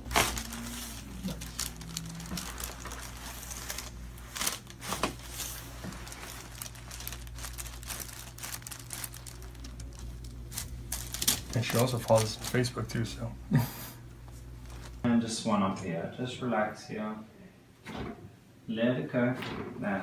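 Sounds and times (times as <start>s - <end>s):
rustling and crinkling on table: 0.0s - 12.8s, 14.2s - 15.1s
steady low hum: 0.0s - 20.0s.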